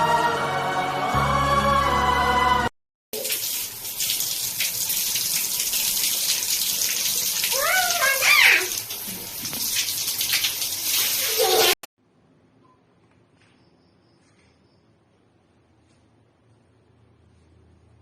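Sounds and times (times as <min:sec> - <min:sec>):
shower water spraying: 0:03.2 - 0:11.8.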